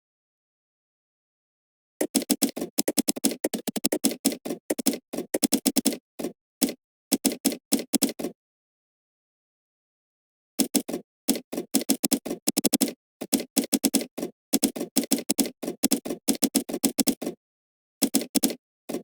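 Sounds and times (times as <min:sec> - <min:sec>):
computer keyboard typing: 0:02.0 - 0:08.3, 0:10.6 - 0:17.4, 0:18.0 - 0:19.0.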